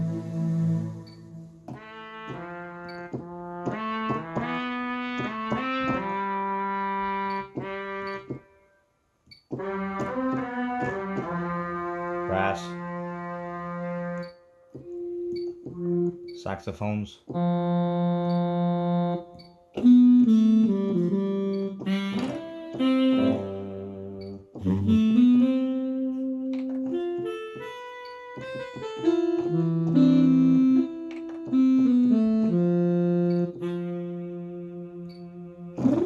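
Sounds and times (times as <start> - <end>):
synthesizer playing melodic phrases: 0.0 - 8.3, 9.6 - 16.7, 17.4 - 36.0.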